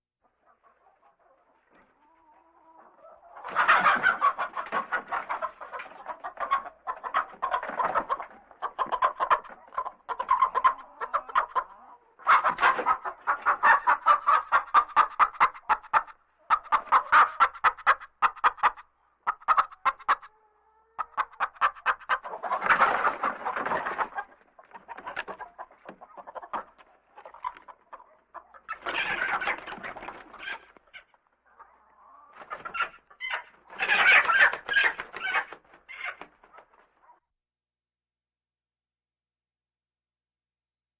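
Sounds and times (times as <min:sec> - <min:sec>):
chickens clucking and cackling: 0:00.2 - 0:37.2.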